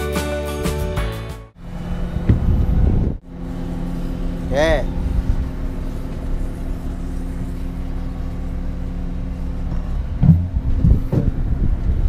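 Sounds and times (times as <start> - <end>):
heavy machine engine humming: 1.5 - 12.0
knocks and thumps: 2.2 - 2.7, 9.7 - 11.4.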